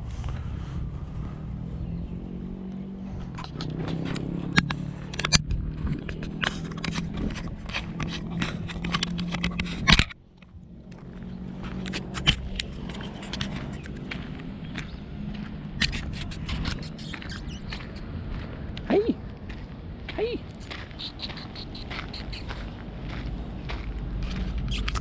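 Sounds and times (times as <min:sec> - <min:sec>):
vehicle engine humming: 0:00.0 - 0:18.8, 0:20.4 - 0:25.0
clicks and scrapes: 0:03.3 - 0:10.2, 0:11.5 - 0:14.1, 0:15.8 - 0:18.0, 0:20.6 - 0:22.5, 0:24.3 - 0:25.0.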